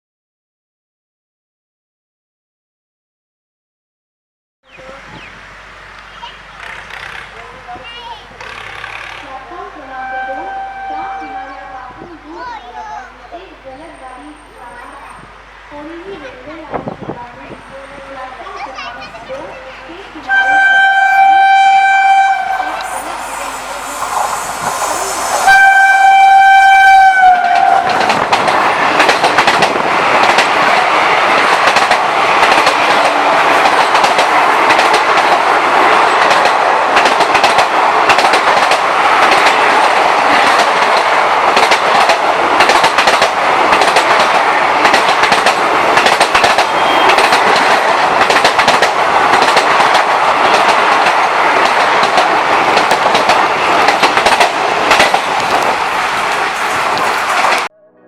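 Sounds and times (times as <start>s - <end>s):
train wheels clattering over rail joints: 6.0s - 9.5s, 22.8s - 57.7s
electric locomotive horn blasts: 9.8s - 12.0s, 19.6s - 28.0s.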